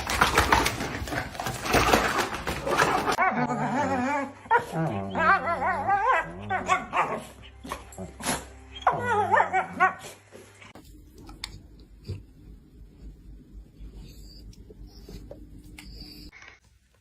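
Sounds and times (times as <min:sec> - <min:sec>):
dog whining yelps and barks: 0:03.1 - 0:10.1.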